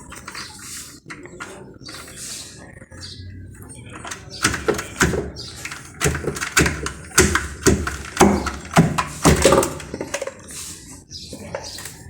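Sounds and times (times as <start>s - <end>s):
sharp knocks and taps: 4.0s - 10.3s.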